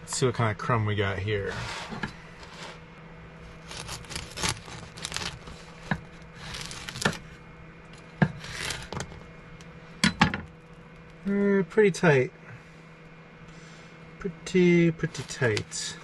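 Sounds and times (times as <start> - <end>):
knife sawing through bread crust: 3.5 - 7.2, 8.4 - 9.0.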